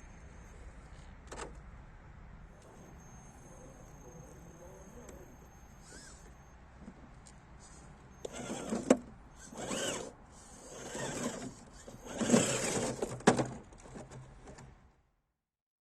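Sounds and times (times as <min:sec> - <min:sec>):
electric motor whining: 0:02.6 - 0:06.5, 0:08.2 - 0:13.2.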